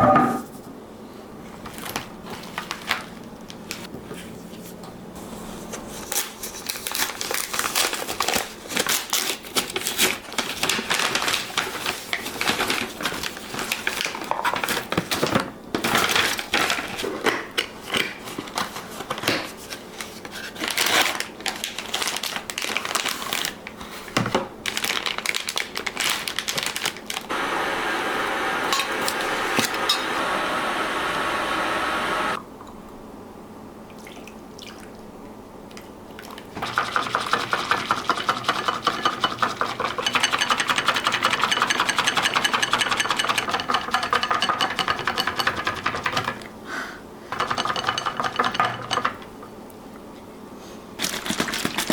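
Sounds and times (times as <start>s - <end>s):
crinkling and rustling: 5.8s - 24.0s, 24.6s - 27.3s
steady rushing noise: 27.3s - 32.4s.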